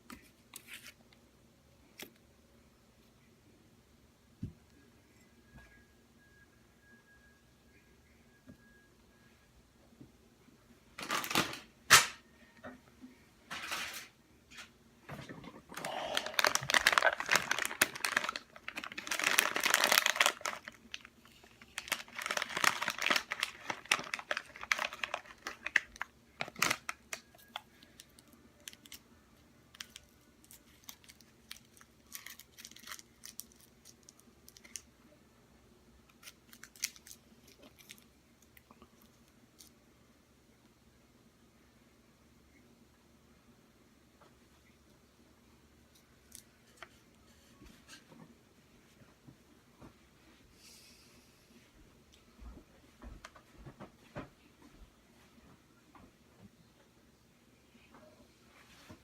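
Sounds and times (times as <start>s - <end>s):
wrapper crinkling: 11.0s - 12.1s, 15.7s - 29.0s, 29.7s - 34.9s, 36.1s - 38.6s.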